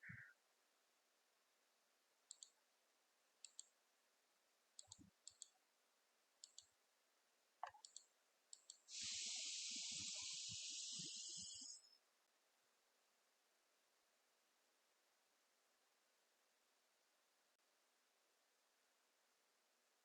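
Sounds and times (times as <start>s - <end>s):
computer mouse double-clicks: 2.3s - 2.6s, 3.4s - 3.7s, 4.8s - 5.6s, 6.4s - 6.7s, 7.6s - 10.0s
steady hiss: 8.9s - 12.0s.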